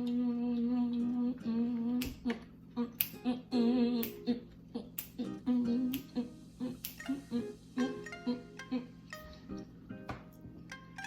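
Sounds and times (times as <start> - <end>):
woman humming a slow tune: 0.0 - 9.5
sharp clicks or snaps: 5.0 - 5.2, 6.8 - 7.0.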